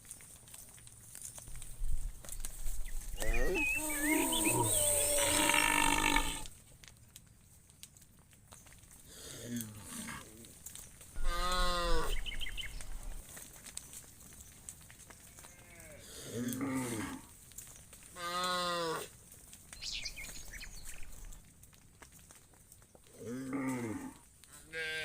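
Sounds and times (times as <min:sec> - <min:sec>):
cattle mooing: 0:03.2 - 0:06.5, 0:11.2 - 0:12.2.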